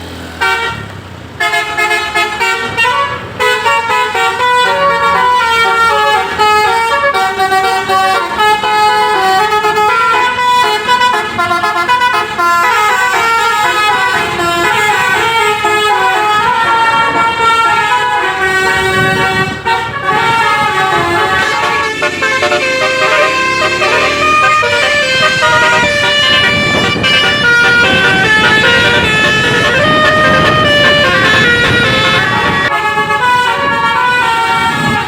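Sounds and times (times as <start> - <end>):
multi-tone bus horn melody: 0.2 - 35.0.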